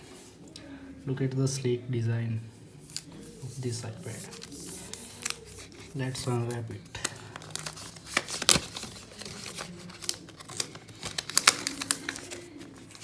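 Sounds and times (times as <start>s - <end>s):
plastic wrapping peeled crinkling: 2.8s - 13.0s.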